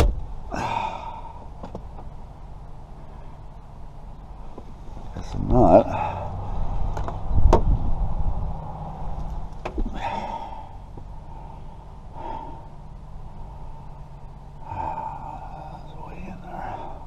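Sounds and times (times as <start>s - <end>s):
low rumble of tool handling: 0.0s - 15.7s
steady low hum: 0.0s - 17.0s
man breathing out heavily: 0.5s - 1.6s, 5.9s - 6.7s, 9.8s - 15.9s.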